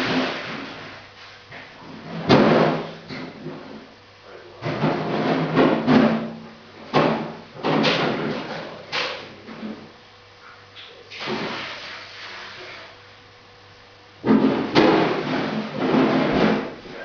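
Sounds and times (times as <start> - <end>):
objects knocking and clattering: 4.6 - 9.9, 14.2 - 16.8.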